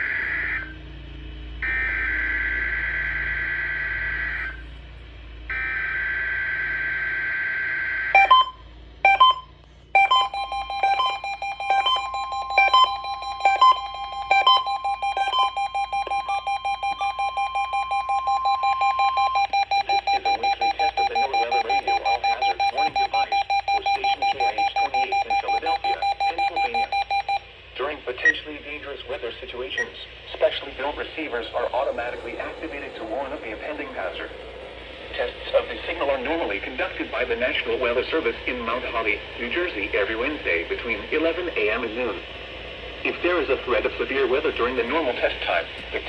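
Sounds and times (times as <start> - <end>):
electronic beeps: 8.2 - 27.4
steady electronic tones: 9.1 - 27.4.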